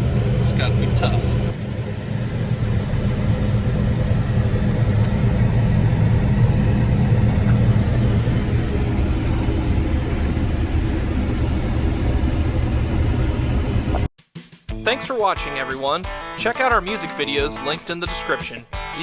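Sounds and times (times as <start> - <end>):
combine harvester engine drone: 0.0 - 14.1.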